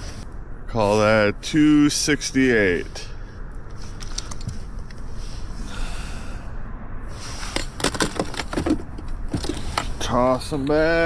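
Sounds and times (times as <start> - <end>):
low steady rumble: 0.0 - 11.0
handling clicks and rattles: 3.7 - 5.0, 7.4 - 10.1.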